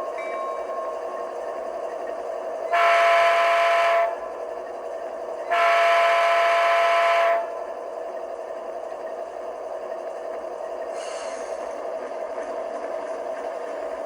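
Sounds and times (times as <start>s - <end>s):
model locomotive diesel engine: 0.0s - 14.0s
multi-tone horn blasts: 2.7s - 4.2s, 5.5s - 7.5s.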